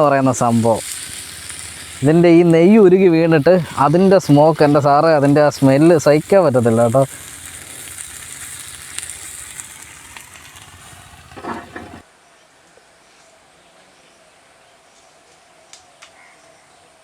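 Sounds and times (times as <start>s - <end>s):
fat sizzling on hot stones: 0.0s - 12.0s.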